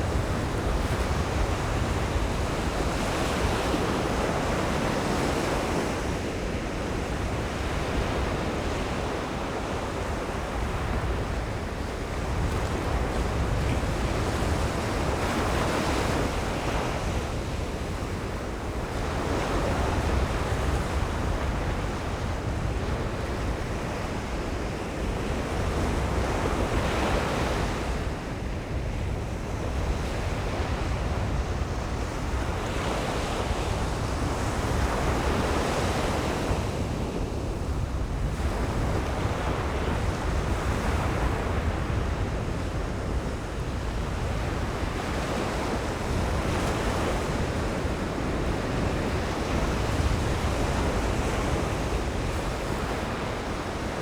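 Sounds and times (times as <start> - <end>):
waves breaking on beach: 0.0 - 54.0.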